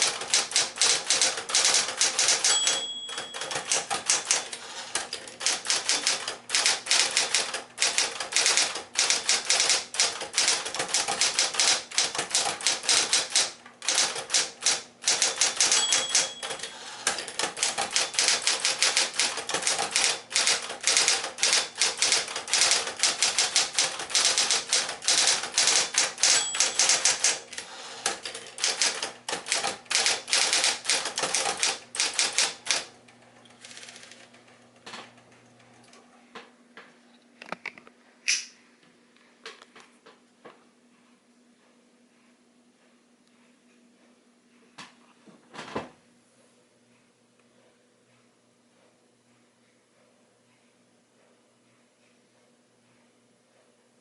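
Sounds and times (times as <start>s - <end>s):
typewriter bell ringing: 0.0s - 9.8s, 10.4s - 27.7s
typewriter keys clattering: 0.0s - 32.9s, 33.6s - 34.4s
typewriter motor humming: 0.0s - 32.9s, 33.5s - 34.3s.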